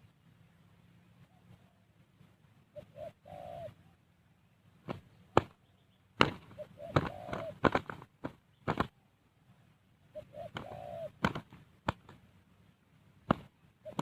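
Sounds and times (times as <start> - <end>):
dove cooing: 1.2 - 4.1, 4.9 - 9.0, 10.0 - 12.0, 13.3 - 14.0
sharp slaps and knocks: 4.8 - 5.6, 6.2 - 8.9, 10.6 - 12.2, 13.2 - 13.5.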